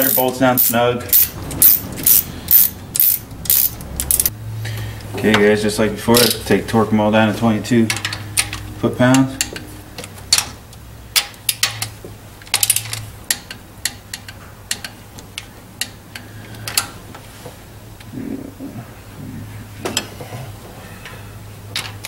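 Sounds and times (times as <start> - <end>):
torque wrench ratcheting and clicking: 0.0 - 4.3
steady low hum: 0.0 - 22.0.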